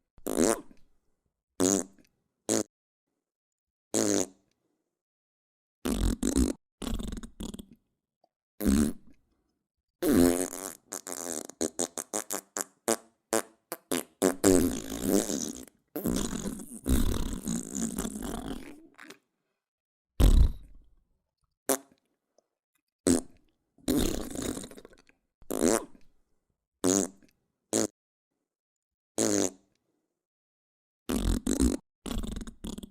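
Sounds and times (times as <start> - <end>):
fart sound effects: 5.8 - 7.6, 8.6 - 9.1, 10.0 - 18.8, 20.2 - 20.8, 23.1 - 23.3, 23.9 - 24.8, 25.5 - 26.0, 26.8 - 27.2, 29.2 - 29.6, 31.1 - 32.9.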